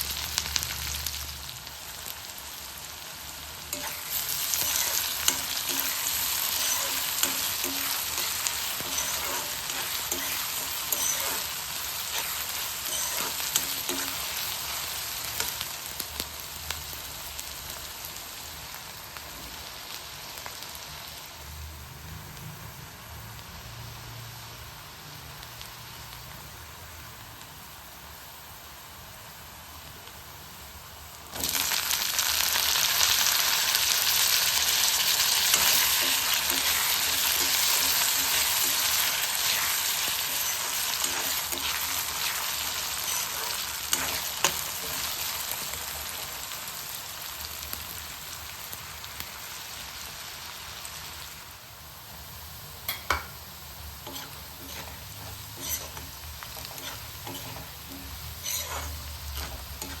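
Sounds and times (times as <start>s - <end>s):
food sizzling in hot oil: 0.0s - 60.0s
spatula clicking and scraping pan: 3.7s - 14.8s, 35.2s - 45.7s, 54.0s - 60.0s.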